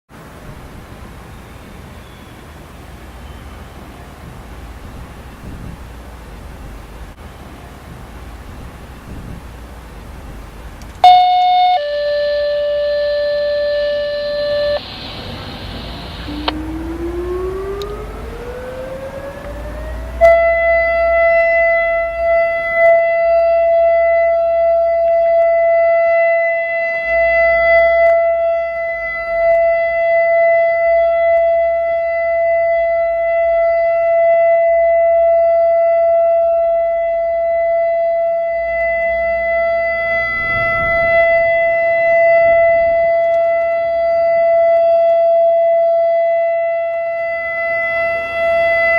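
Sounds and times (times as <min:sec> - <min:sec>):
warning siren wailing: 0:11.0 - 0:48.9.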